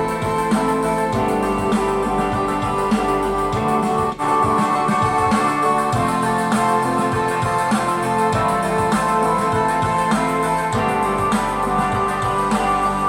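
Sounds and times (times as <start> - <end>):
instrumental rock music: 0.0 - 13.0.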